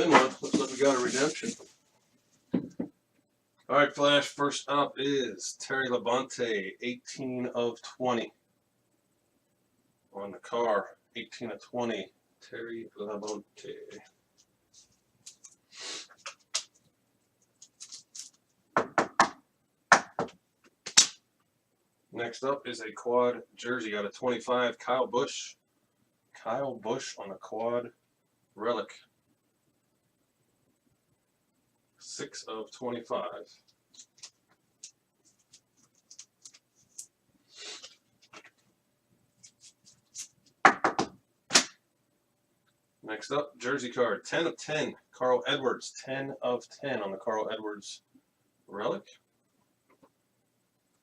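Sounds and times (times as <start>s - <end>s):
cards sliding rustle: 0.0s - 1.8s, 17.6s - 18.4s, 34.0s - 38.6s, 39.4s - 40.5s
sharp taps of cards: 18.8s - 21.2s, 40.6s - 41.8s.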